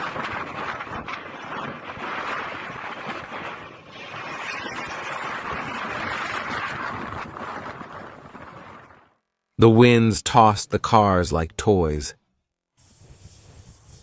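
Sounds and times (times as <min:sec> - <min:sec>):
wind buffeting microphone: 0:00.0 - 0:09.2.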